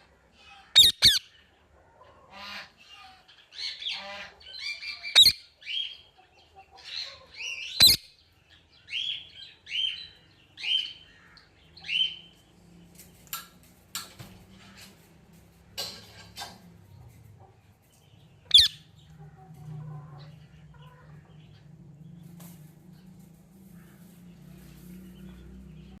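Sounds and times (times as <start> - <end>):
parrot squawking: 0.8 - 1.3, 18.5 - 18.8.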